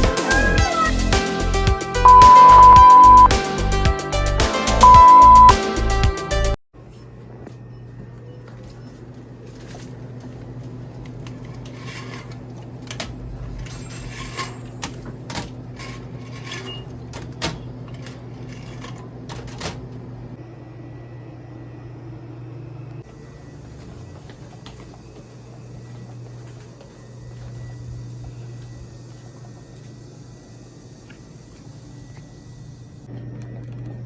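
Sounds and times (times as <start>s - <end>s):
steady low hum: 6.8s - 34.0s.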